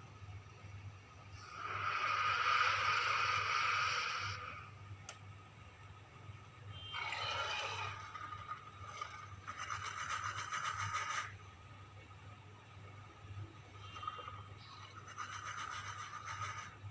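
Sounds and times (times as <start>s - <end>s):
monster screech: 1.5s - 4.6s, 6.9s - 9.2s.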